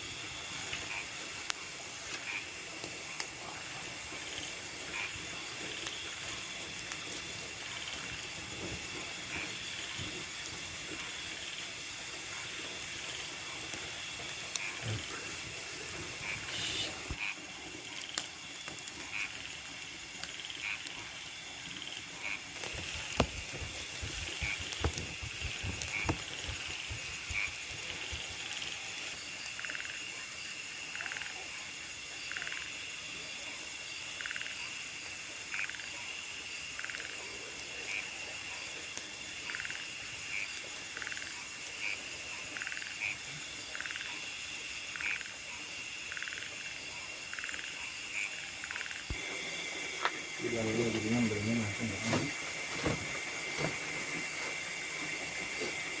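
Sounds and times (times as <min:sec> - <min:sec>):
insects ringing: 0:00.0 - 0:56.0
frog calling: 0:00.7 - 0:19.6, 0:20.2 - 0:32.8, 0:33.4 - 0:56.0.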